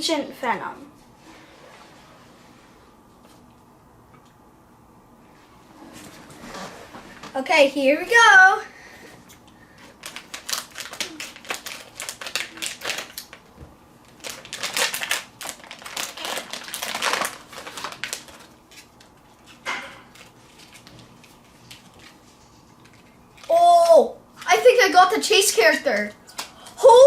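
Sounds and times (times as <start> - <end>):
plastic packaging crinkling: 9.7 - 23.6.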